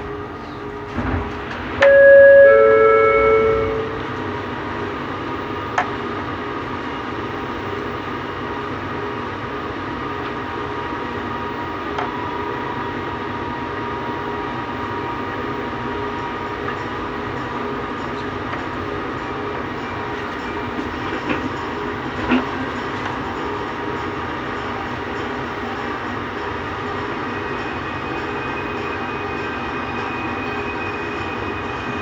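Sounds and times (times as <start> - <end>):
train two-note horn: 0.0 - 4.8
train running with humming tone: 0.0 - 32.0.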